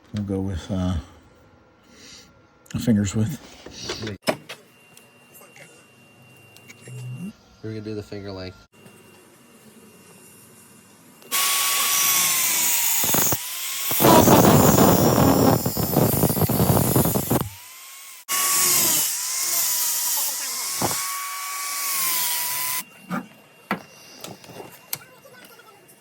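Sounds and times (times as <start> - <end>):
power tool cutting sheet metal: 11.2 - 23.2.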